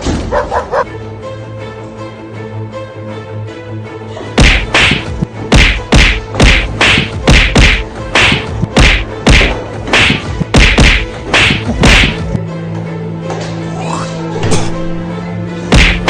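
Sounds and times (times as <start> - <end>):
sharp whacks: 4.4 - 12.4, 15.7 - 16.0.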